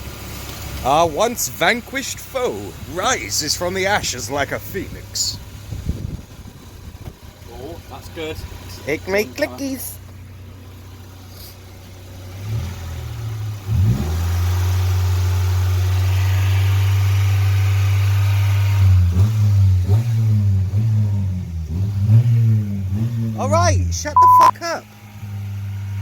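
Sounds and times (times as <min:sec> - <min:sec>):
car engine revving: 0:00.7 - 0:25.9.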